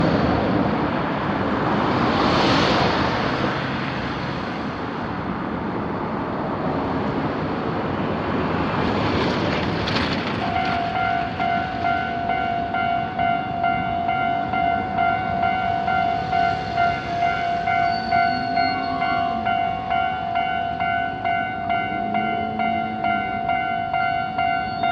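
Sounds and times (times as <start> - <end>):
road traffic passing: 0.0 - 24.9
level crossing warning bell: 10.4 - 24.9.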